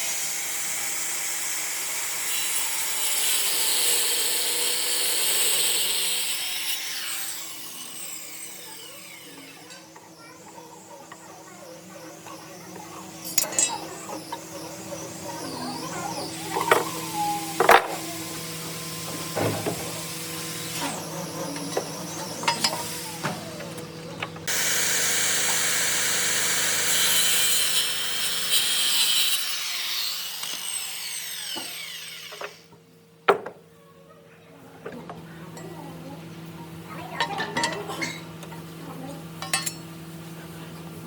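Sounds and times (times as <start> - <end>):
power tool cutting wood: 0.0 - 10.3, 12.2 - 32.7.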